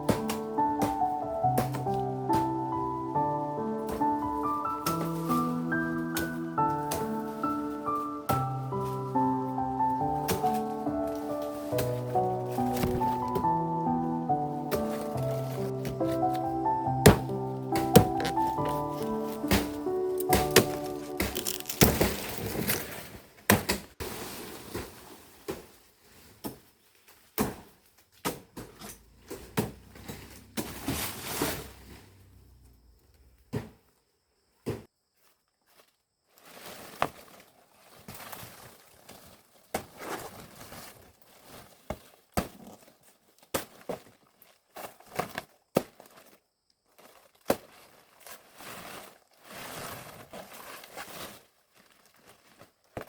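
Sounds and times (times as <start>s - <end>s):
footsteps: 0.0s - 23.0s
rustling and crinkling: 0.0s - 53.0s.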